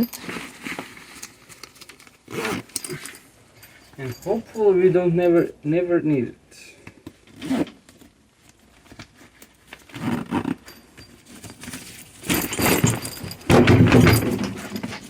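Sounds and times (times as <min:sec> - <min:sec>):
tool bag rustling and knocking: 0:00.0 - 0:04.8, 0:08.8 - 0:15.0.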